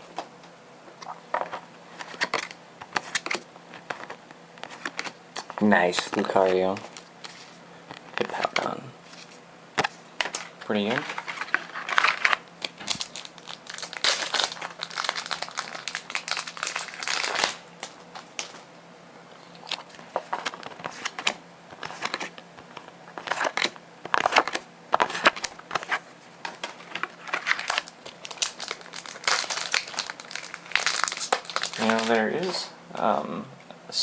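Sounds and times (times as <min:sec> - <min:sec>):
foil wrappers crinkling: 0:02.0 - 0:09.4, 0:10.2 - 0:18.6, 0:23.2 - 0:32.6.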